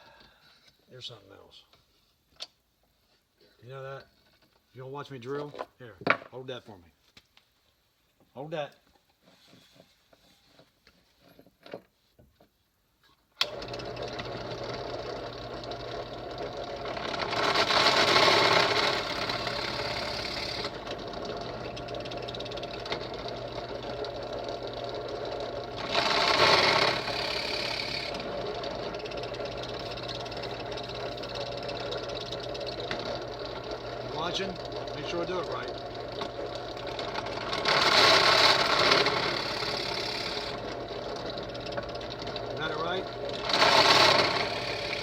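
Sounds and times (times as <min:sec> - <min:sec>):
drill bit boring into wood: 0:13.4 - 0:45.0
drill press running: 0:13.4 - 0:45.0.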